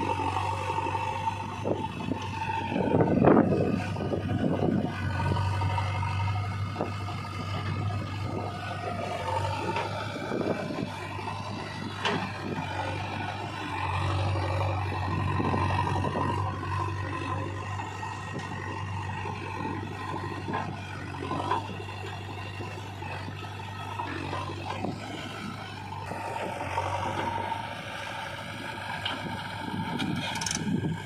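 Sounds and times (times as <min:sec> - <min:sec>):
heavy diesel engine running: 0:00.0 - 0:31.0.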